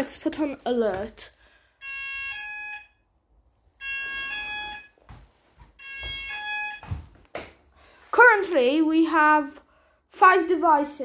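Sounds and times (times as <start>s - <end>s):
fire alarm two-tone signal: 1.8s - 3.0s, 3.8s - 5.0s, 5.8s - 7.1s.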